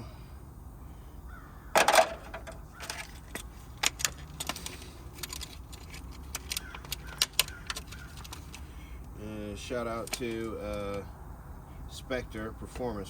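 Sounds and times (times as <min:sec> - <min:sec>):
steady low hum: 0:00.0 - 0:06.4.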